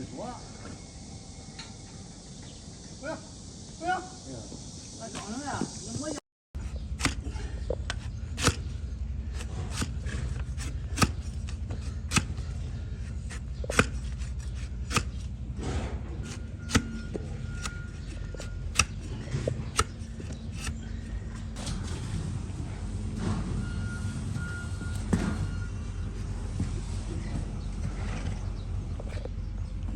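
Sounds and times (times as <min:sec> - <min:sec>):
steady low hum: 0:05.7 - 0:29.9
blade cutting hoof: 0:06.6 - 0:21.8.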